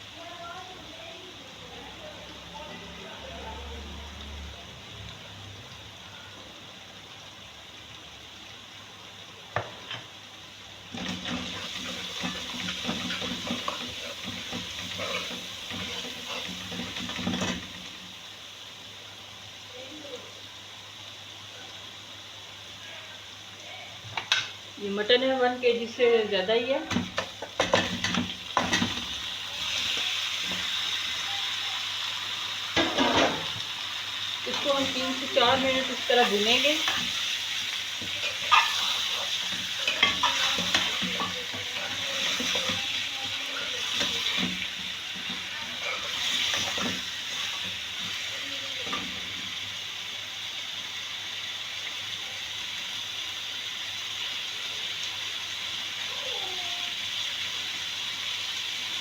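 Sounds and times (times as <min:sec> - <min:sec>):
ghee sizzling: 0:00.0 - 0:59.0
spoon scraping a pan: 0:11.0 - 0:17.9, 0:26.9 - 0:30.7, 0:34.5 - 0:49.4.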